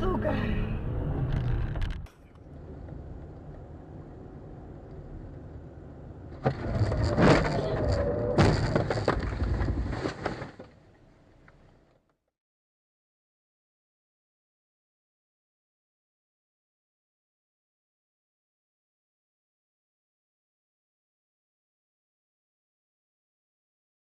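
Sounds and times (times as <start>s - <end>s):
car road noise: 0.0s - 11.9s
car collision: 6.3s - 11.0s.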